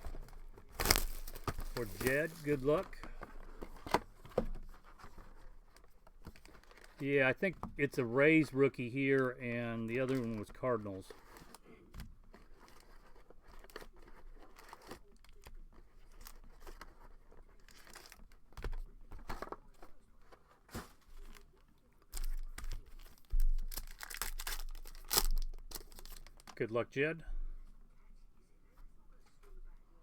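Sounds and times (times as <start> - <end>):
wrapper tearing and crinkling: 0.0 - 3.0, 22.2 - 26.6
cards being handled: 0.0 - 7.1.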